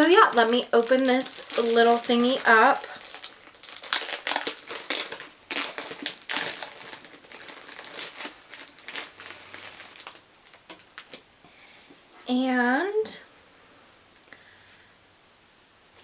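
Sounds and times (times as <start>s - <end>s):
wrapping crinkling: 0.0s - 11.3s.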